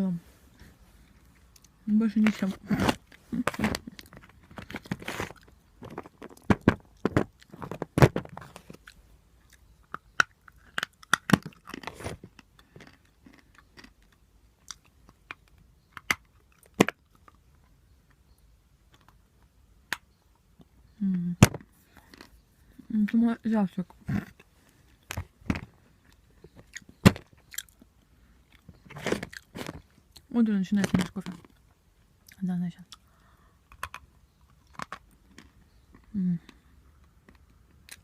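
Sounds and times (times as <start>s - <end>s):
person crunching chalk: 2.2s - 8.8s.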